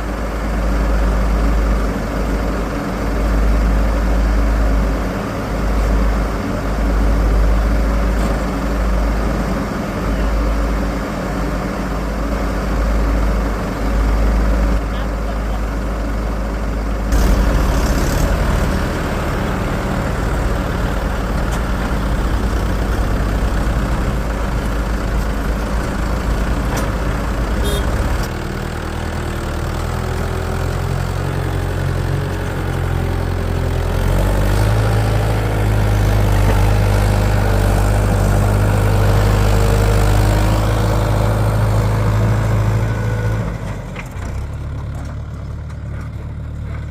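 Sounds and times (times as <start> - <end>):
diesel engine running: 0.0 - 46.9.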